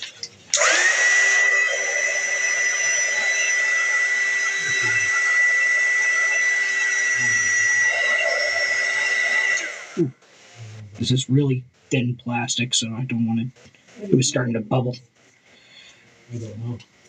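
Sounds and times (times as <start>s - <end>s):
hot-air blower whining: 0.5s - 12.1s.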